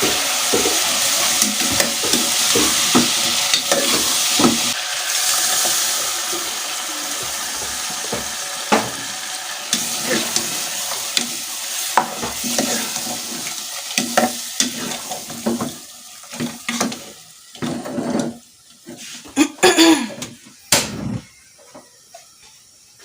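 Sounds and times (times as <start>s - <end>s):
food sizzling in oil: 0.0s - 20.8s
spoon scraping a pot: 17.6s - 19.2s.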